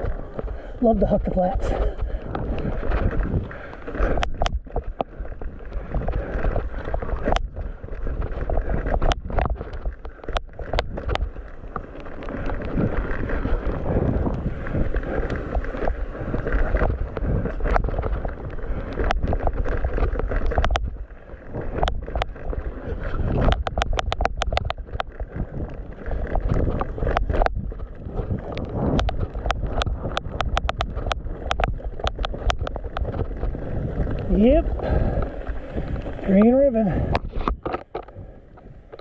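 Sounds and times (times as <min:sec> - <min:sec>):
bike clicks and knocks: 0:00.0 - 0:39.0
bike tyre and wind rush: 0:00.0 - 0:39.0.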